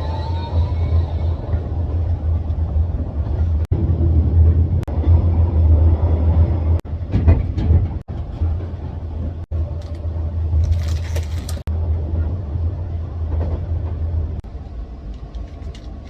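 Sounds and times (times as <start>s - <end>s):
train running low rumble: 0.0s - 16.0s
knocks and rattles: 6.9s - 9.5s.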